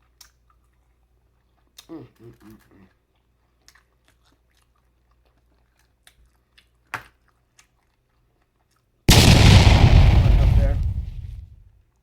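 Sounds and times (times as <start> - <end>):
close chewing: 0.0 - 8.8.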